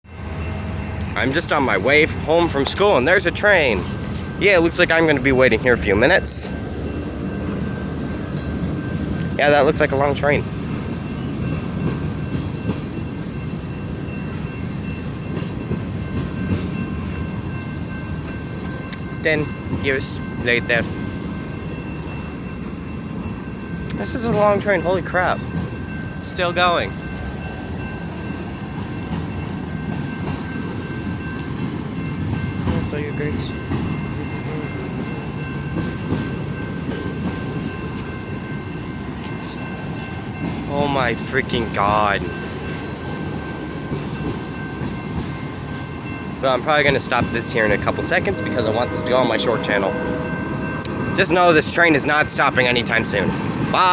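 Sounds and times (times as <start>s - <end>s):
train wheels rumbling on rails: 0.1s - 53.9s
faint train clacks: 0.5s - 21.0s, 23.8s - 53.9s
thin high tones: 37.7s - 53.3s.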